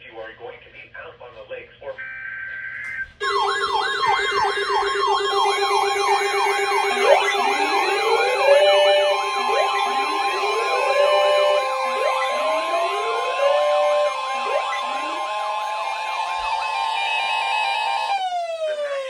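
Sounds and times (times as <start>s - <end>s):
electronic sirens yelping and wailing: 2.6s - 19.0s
steady two-note tone: 3.2s - 18.2s.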